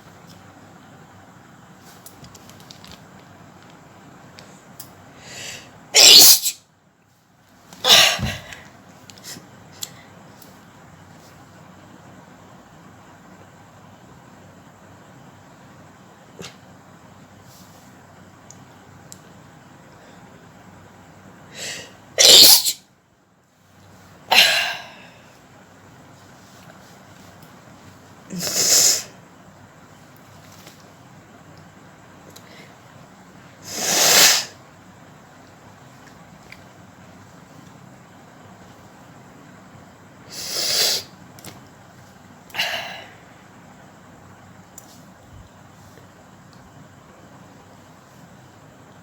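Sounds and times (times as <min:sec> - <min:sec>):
woman sneezing: 0:06.0 - 0:06.6, 0:07.8 - 0:08.6, 0:21.6 - 0:22.8, 0:24.3 - 0:25.0
quick intake of breath: 0:40.3 - 0:41.1.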